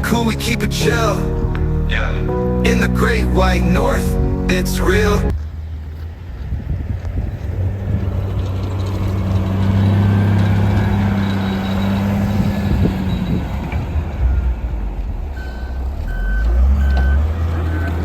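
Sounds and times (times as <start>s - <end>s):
heavy vehicle engine humming: 0.0s - 18.0s
reversing alarm beeping: 15.3s - 18.0s.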